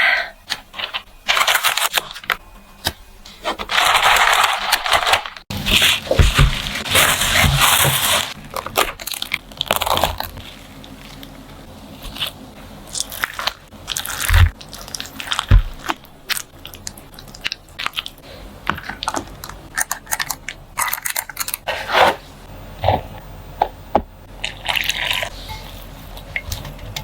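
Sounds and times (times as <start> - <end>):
crisp food crunching: 0.5 - 2.3, 3.7 - 21.7.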